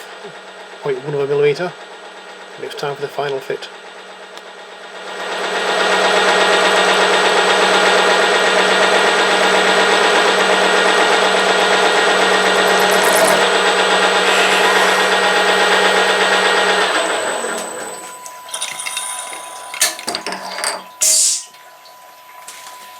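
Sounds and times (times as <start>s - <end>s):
milling machine whine: 6.2s - 20.1s.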